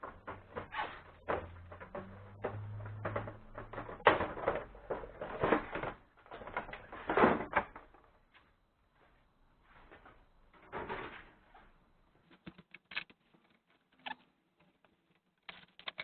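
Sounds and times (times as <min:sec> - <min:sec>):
scooter parts knocking and rattling: 0:00.0 - 0:08.2.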